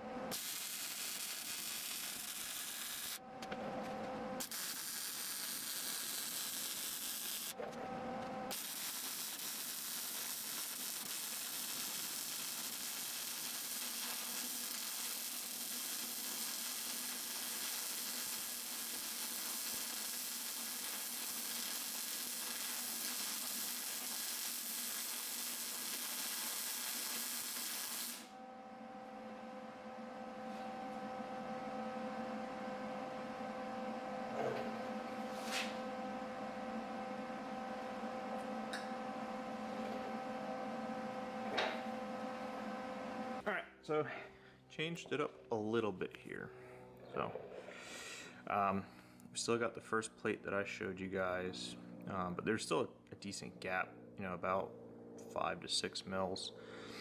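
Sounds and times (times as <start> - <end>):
plasma cutter hissing: 0.3 - 3.2, 4.4 - 7.5, 8.5 - 28.3.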